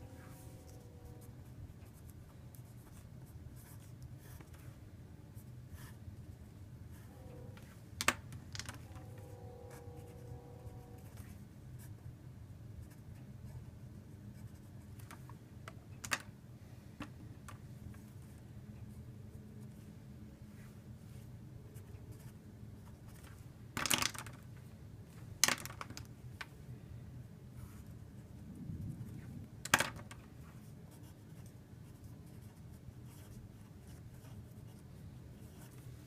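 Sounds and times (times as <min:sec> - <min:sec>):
low steady hum: 0:00.0 - 0:36.0
pen scratching on paper: 0:01.8 - 0:04.6, 0:09.7 - 0:10.3, 0:14.4 - 0:14.8, 0:22.1 - 0:23.2, 0:30.6 - 0:34.8, 0:35.4 - 0:35.9.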